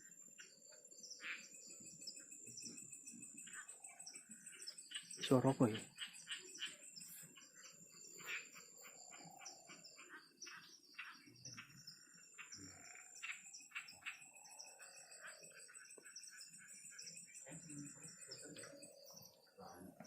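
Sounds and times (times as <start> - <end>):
frogs calling: 0.0 - 20.0
high-pitched insect trill: 11.5 - 19.0.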